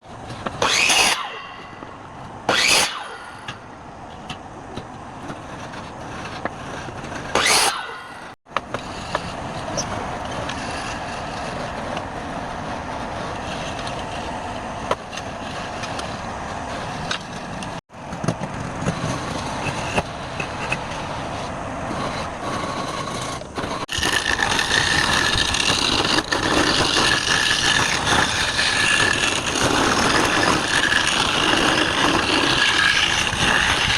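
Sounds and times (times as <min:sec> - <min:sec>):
woodworking machinery cutting wood: 0:00.5 - 0:01.9, 0:02.5 - 0:03.6, 0:06.4 - 0:08.8, 0:19.3 - 0:33.9.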